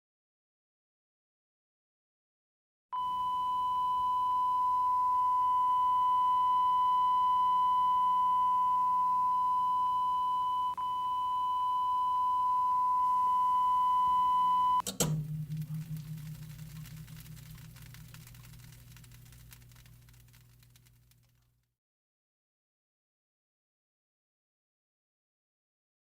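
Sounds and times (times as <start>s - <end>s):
electronic test tone: 3.0s - 15.2s
low hum: 14.0s - 21.6s
click: 14.8s - 21.5s.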